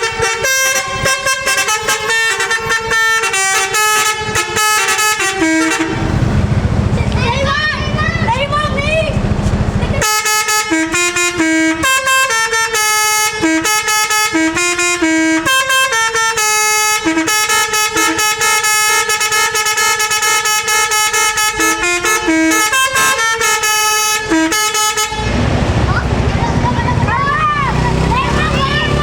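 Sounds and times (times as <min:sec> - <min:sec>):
air horn playing tune: 0:00.0 - 0:06.6, 0:10.0 - 0:25.6.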